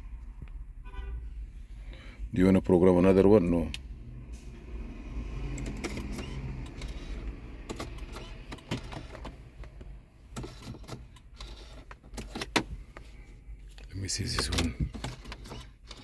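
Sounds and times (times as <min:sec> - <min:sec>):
low hum in car cabin: 0:00.0 - 0:16.0
key fobs and plastic clicking: 0:13.7 - 0:16.0.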